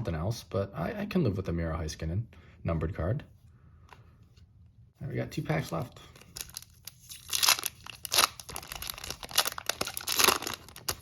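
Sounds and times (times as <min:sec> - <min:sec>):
wrapper crinkling and tearing: 0:06.2 - 0:11.0.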